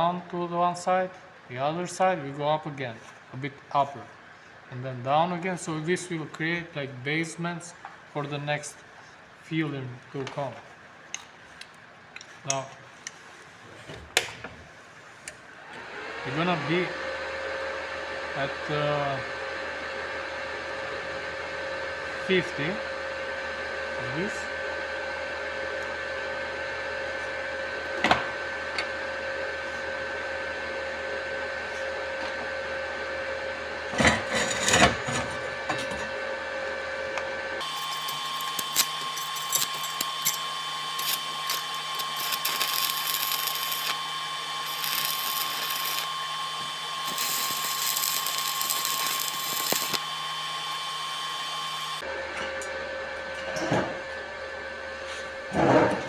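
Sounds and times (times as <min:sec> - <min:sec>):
welding machine whine: 0:15.1 - 0:55.8
welding arc crackling: 0:37.6 - 0:50.1.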